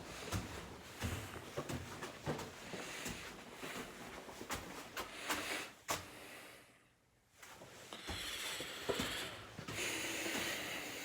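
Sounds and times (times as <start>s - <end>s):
faint footsteps: 0.0s - 6.1s, 7.4s - 10.9s.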